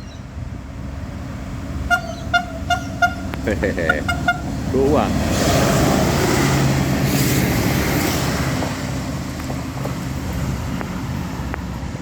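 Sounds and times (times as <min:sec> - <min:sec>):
diesel engine drone: 0:00.0 - 0:12.0
train wheels rushing on rails: 0:04.0 - 0:12.0.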